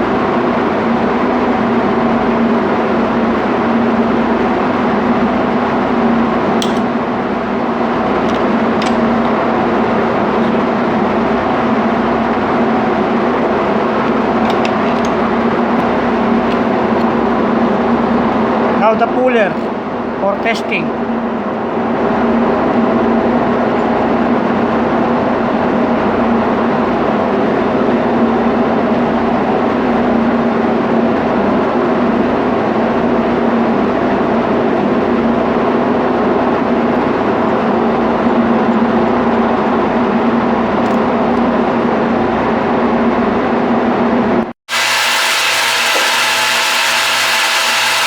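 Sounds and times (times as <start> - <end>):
ship's machinery droning: 4.4 - 18.8, 44.7 - 48.0.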